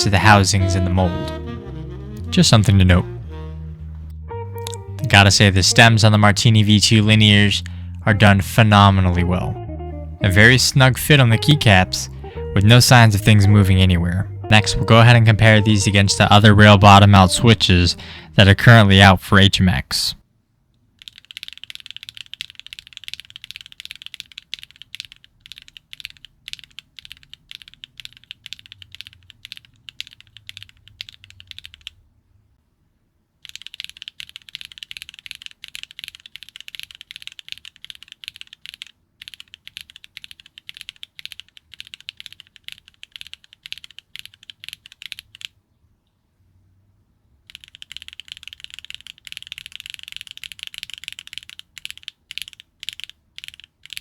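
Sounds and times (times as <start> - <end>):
fast mechanical keyboard typing: 21.0 - 32.0, 33.4 - 45.6, 47.5 - 54.0.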